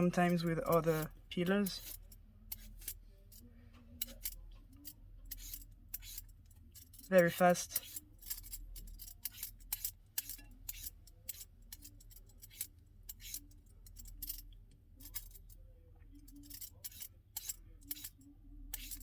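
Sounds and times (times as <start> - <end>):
peeler scraping cucumber skin: 0.0 - 3.0, 4.0 - 14.4, 16.4 - 19.0.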